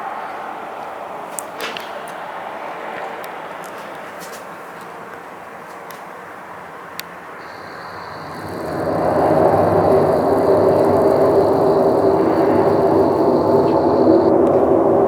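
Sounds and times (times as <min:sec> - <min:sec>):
thin high whine: 0:07.4 - 0:14.9
low droning rumble from sky: 0:07.4 - 0:15.0.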